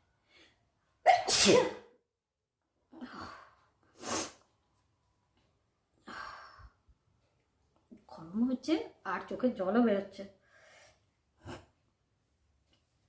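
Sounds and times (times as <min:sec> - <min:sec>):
person sneezing: 0:01.1 - 0:01.9.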